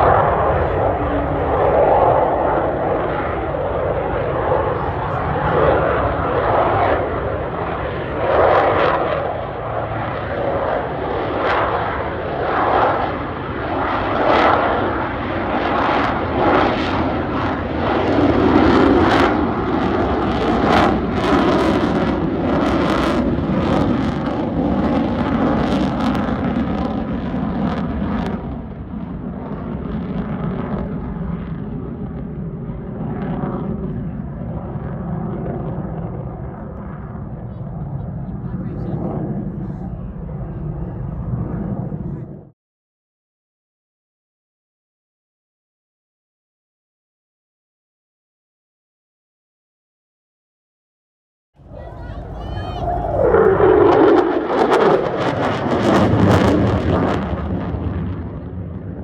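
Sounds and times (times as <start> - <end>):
jet fighter roaring: 0.0 - 42.4, 51.6 - 59.0.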